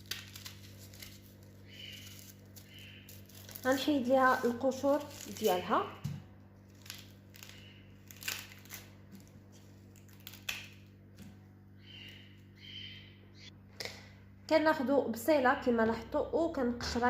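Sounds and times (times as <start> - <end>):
onion skin crackling and tearing: 0.0 - 11.3.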